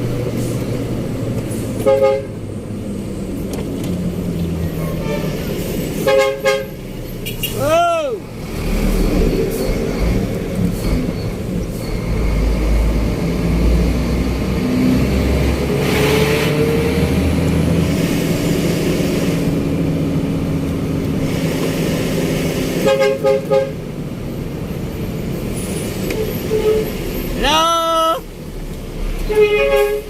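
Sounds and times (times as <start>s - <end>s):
horn short toots: 29.3s - 30.0s.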